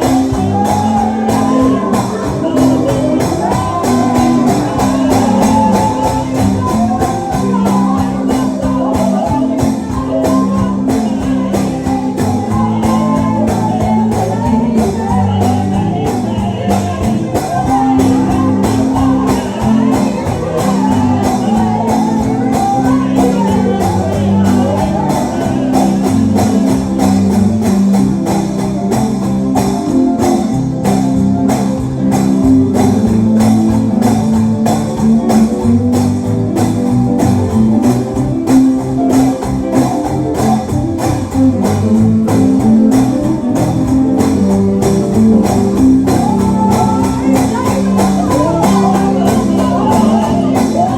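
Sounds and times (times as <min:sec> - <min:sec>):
gospel band playing: 0:00.0 - 0:50.9.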